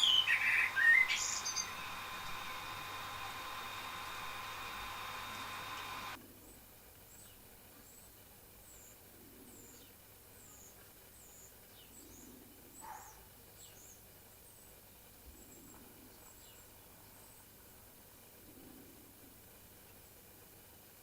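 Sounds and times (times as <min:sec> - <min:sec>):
high bird chirps: 0:00.0 - 0:02.5
room hiss: 0:00.0 - 0:21.0.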